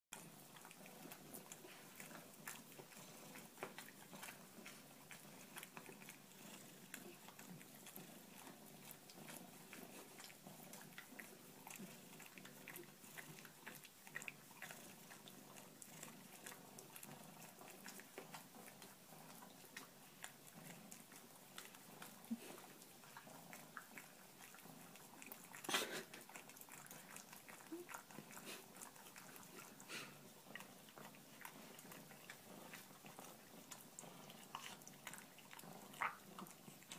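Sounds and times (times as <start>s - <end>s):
pet chewing and biting: 0.1s - 36.9s.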